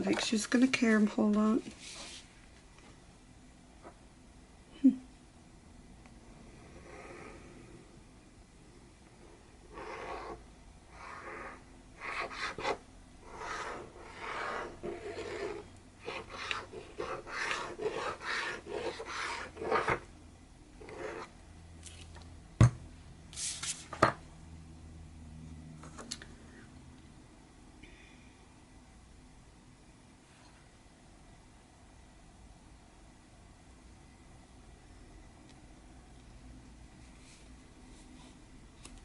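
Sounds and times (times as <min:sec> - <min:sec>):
rasping strokes on paper: 0:09.6 - 0:20.0, 0:20.8 - 0:21.3.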